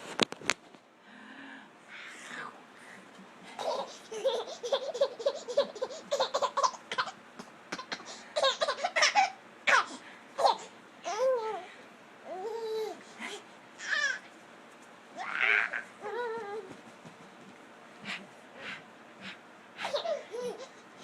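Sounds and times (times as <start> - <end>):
baby laughing: 3.6 - 11.6, 19.8 - 21.0.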